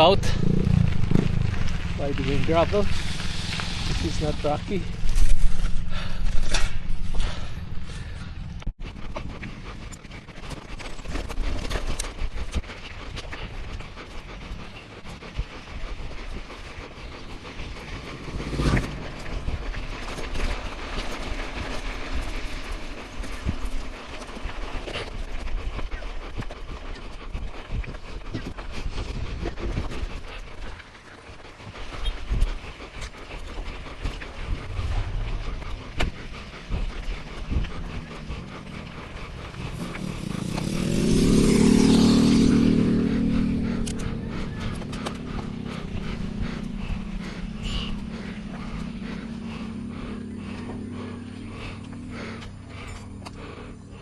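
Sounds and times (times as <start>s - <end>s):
tyres crunching on gravel: 0.0s - 6.7s
bicycle rolling over gravel: 0.0s - 7.5s, 17.6s - 26.2s
bike rattling: 0.0s - 54.0s
motor vehicle engine: 0.0s - 54.0s.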